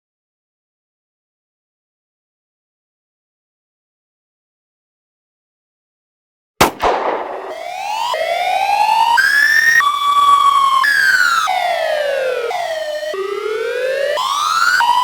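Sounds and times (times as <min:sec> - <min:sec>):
electronic alarm siren sweeping: 0:07.2 - 0:15.0.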